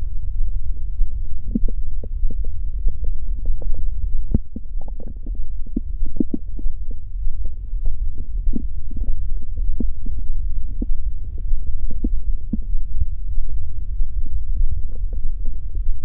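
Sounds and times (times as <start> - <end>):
stomach growling: 1.4 - 12.8.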